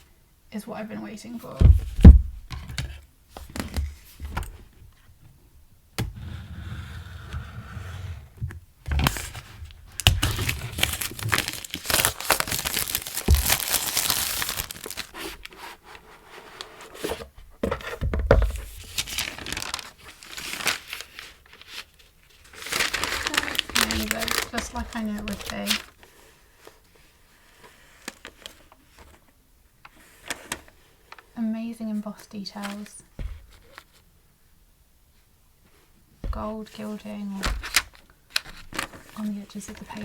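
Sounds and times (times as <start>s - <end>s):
packaging crinkling and rustling: 9.0s - 17.3s, 18.4s - 26.8s, 27.6s - 29.3s, 36.3s - 40.0s
packaging tearing: 9.9s - 15.6s, 18.8s - 21.8s, 22.4s - 26.0s.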